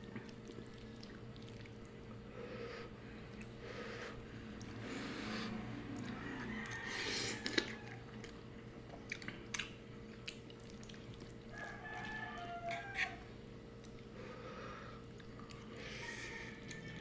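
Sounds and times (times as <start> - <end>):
chewing noodles: 0.0 - 17.0
rooster crowing: 6.0 - 8.3, 11.5 - 13.3, 15.8 - 17.0.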